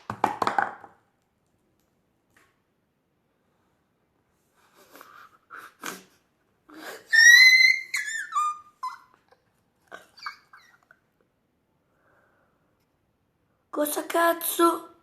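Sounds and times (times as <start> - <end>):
high whistle-like squeak: 7.1 - 8.6.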